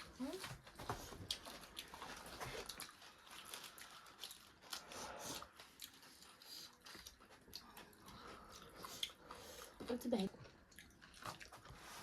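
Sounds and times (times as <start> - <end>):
chewing crunches and clicks: 0.0 - 12.0.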